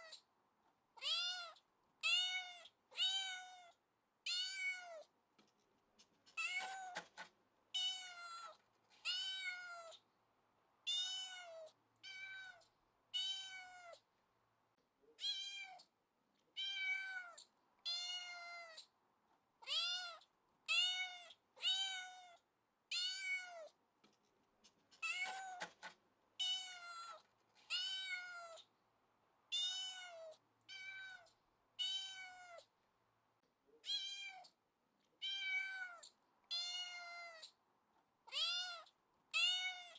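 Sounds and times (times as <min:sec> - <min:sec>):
cat meowing: 0:01.0 - 0:05.1, 0:07.8 - 0:10.0, 0:10.9 - 0:12.6, 0:13.2 - 0:14.0, 0:15.2 - 0:15.8, 0:16.6 - 0:18.9, 0:19.6 - 0:23.7, 0:26.4 - 0:28.7, 0:29.5 - 0:32.7, 0:33.8 - 0:34.6, 0:35.2 - 0:37.6, 0:38.3 - 0:39.9.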